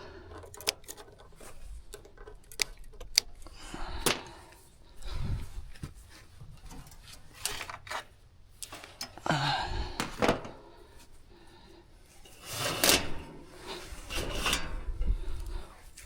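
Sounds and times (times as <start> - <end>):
hand tools clicking and knocking: 0.0 - 5.2
scraping rattle: 0.0 - 8.1, 12.2 - 16.0.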